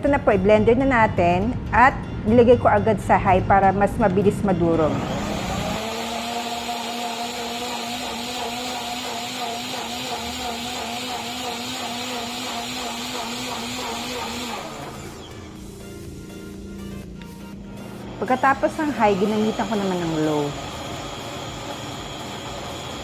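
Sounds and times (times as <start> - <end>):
blender motor whine: 4.8 - 15.8, 18.0 - 23.0.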